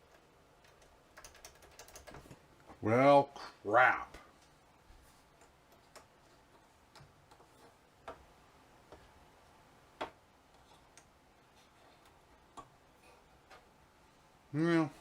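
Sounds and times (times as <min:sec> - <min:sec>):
faint clicks and taps: 0:04.2 - 0:13.8.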